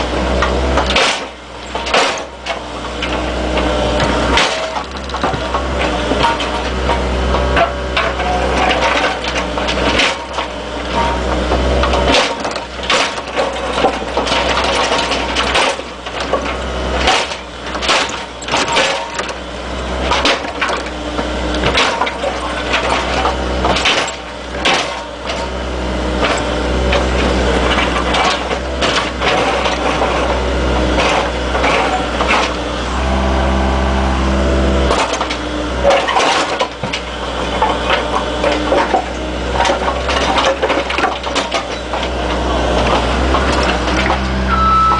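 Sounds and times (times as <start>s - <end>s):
clanks and cracks of crushing: 0.0s - 33.2s, 34.8s - 44.5s
excavator diesel engine running: 0.0s - 44.9s.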